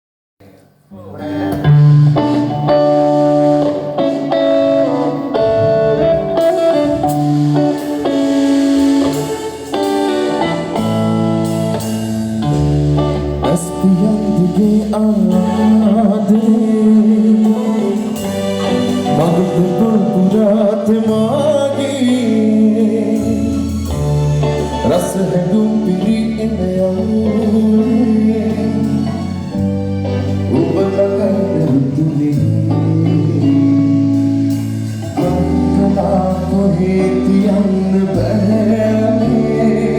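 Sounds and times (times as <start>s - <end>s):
bass notes: 0.4s - 39.9s
guitar: 0.4s - 39.9s
live band playing: 1.0s - 39.9s
person singing: 13.0s - 39.9s.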